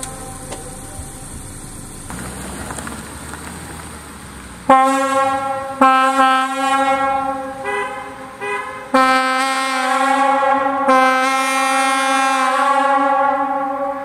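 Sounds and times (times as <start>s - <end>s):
locomotive air horn blast: 0.0s - 1.6s, 4.7s - 14.0s
low air hiss: 0.0s - 5.9s.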